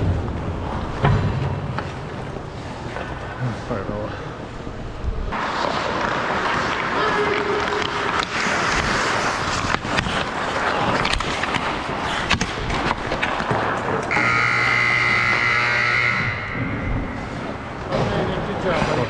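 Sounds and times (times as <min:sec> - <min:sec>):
electric buzzer: 0:14.1 - 0:16.9.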